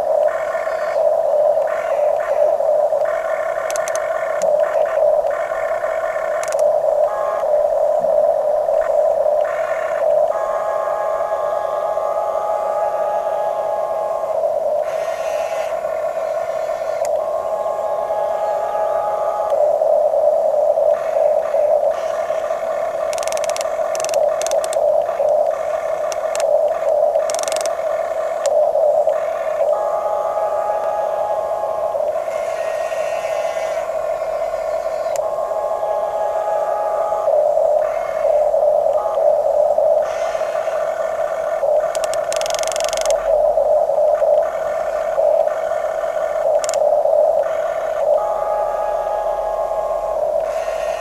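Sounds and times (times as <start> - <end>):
toy electric motors whining: 1.9 - 7.4, 22.0 - 28.6, 41.9 - 43.2, 46.6 - 46.8
electric motors whining: 21.1 - 28.6.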